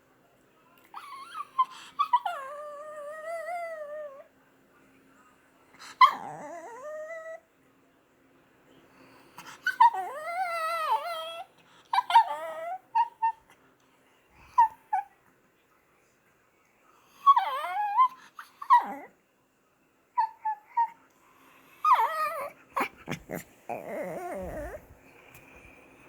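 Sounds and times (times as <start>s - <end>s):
dog whining and yipping: 9.6s - 13.4s, 17.2s - 19.1s, 21.8s - 24.9s.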